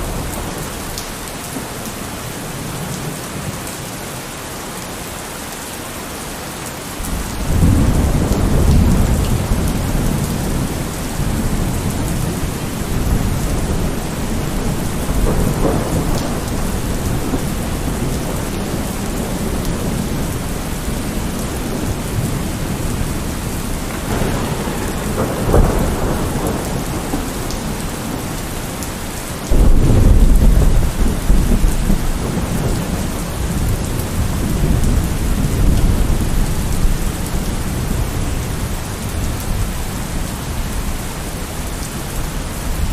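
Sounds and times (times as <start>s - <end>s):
heavy rain falling: 0.0s - 42.9s
rolling thunder: 7.0s - 41.1s.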